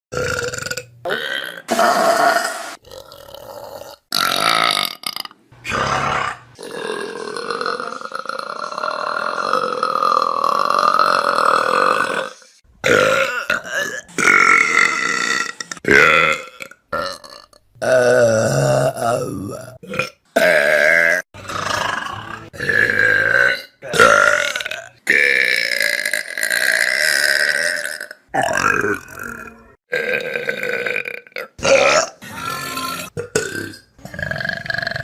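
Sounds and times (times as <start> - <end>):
person burping loudly: 0.1 - 35.0.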